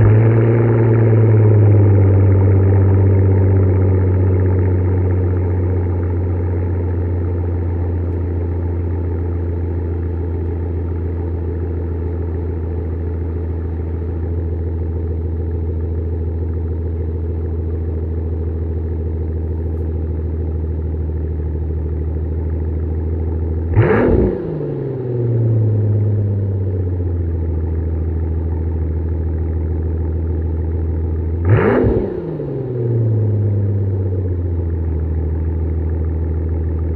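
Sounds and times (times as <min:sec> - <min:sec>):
engine revving: 0:00.0 - 0:05.7, 0:23.6 - 0:26.0, 0:31.4 - 0:34.0
car engine idling rough: 0:00.0 - 0:36.9.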